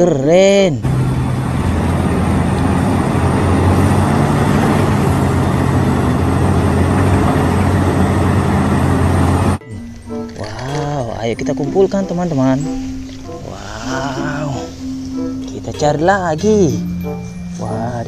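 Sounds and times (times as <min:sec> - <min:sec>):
heavy engine droning: 0:00.8 - 0:10.3.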